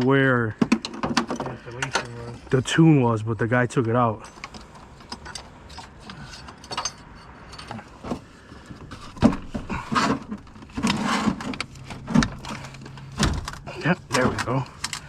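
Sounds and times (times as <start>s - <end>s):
parts and tools clicking and rattling: 0.0s - 2.4s, 4.1s - 15.0s.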